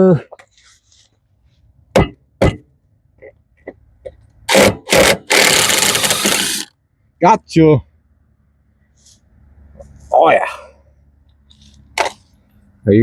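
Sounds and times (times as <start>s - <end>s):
tool knocks: 1.9s - 2.7s.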